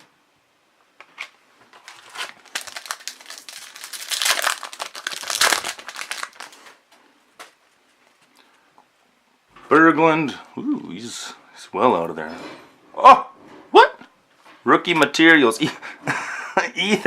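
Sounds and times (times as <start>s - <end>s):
wrapper crinkling: 1.2s - 8.4s.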